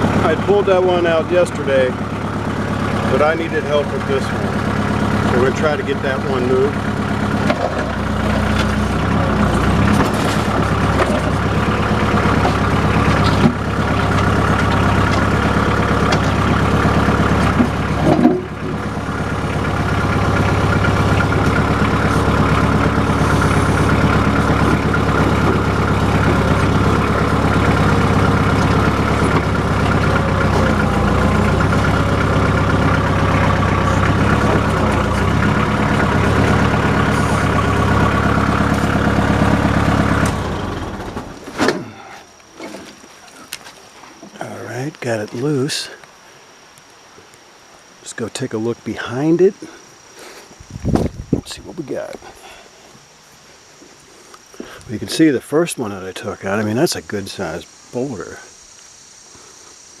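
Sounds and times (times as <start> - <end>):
backhoe engine running under load: 0.0 - 46.0, 48.6 - 58.4.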